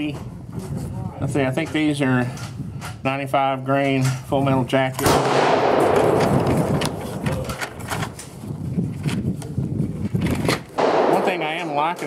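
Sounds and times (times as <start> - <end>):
gunshot echo: 5.0 - 8.2, 10.8 - 12.0
pistol handling clicks and rustle: 5.8 - 12.0.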